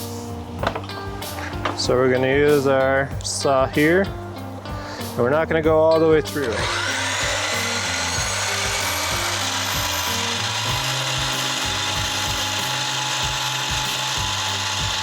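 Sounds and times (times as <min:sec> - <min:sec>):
table saw cutting plank: 0:06.4 - 0:15.0.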